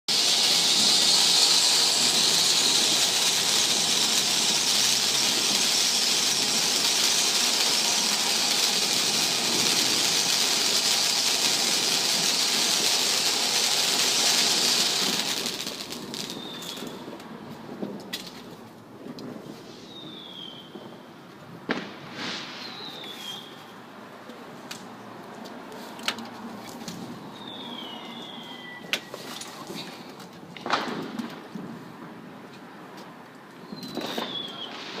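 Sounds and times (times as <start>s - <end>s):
firework hissing: 0.1s - 17.2s, 21.7s - 23.6s.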